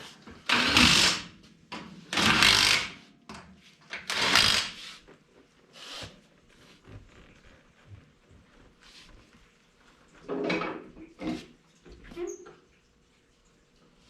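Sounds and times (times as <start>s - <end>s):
power tool bursts: 0.5s - 1.3s, 2.1s - 3.0s, 4.0s - 4.8s.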